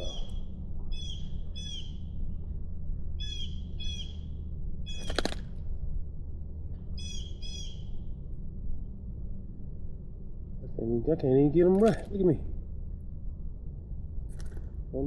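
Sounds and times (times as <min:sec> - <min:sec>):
bird calling harsh notes: 0:00.0 - 0:02.2, 0:03.2 - 0:05.4, 0:06.9 - 0:08.1
steady low rumble: 0:00.0 - 0:15.0
sharp click: 0:04.9 - 0:05.5, 0:11.7 - 0:12.2.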